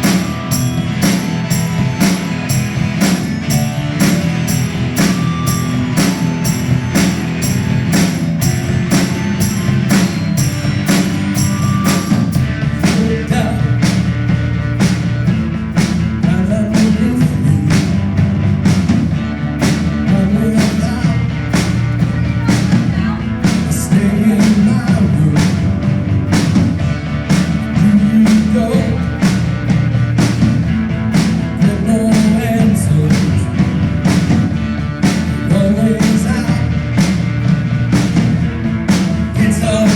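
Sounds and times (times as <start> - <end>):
drums beating: 0.0 - 39.9
guitar: 0.0 - 39.9
person singing: 11.9 - 14.0, 16.2 - 18.0, 20.0 - 25.7, 27.6 - 29.5, 31.6 - 33.8, 35.4 - 36.8, 39.3 - 39.9.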